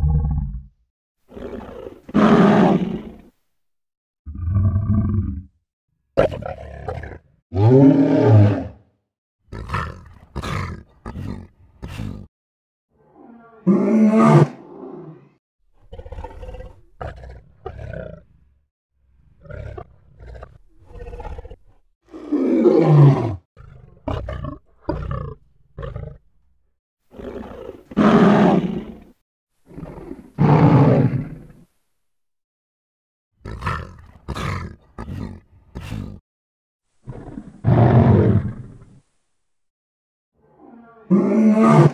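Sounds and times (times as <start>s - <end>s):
lion roaring: 0.0s - 0.6s, 1.3s - 3.2s, 4.3s - 5.5s, 6.2s - 8.9s, 13.0s - 18.3s, 19.4s - 26.2s, 40.4s - 41.9s
lion grunting: 9.5s - 12.3s, 33.4s - 36.2s.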